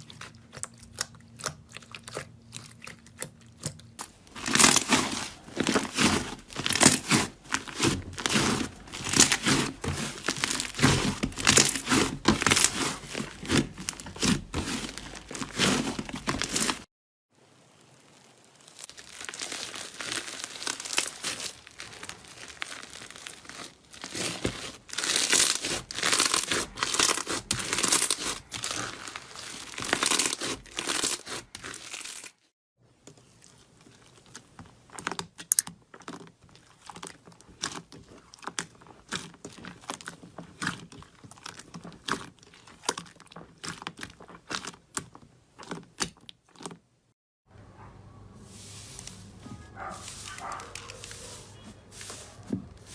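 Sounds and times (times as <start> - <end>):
slime crackling and crunching: 0.0 - 16.9, 17.6 - 32.5, 33.3 - 46.8, 48.5 - 52.9.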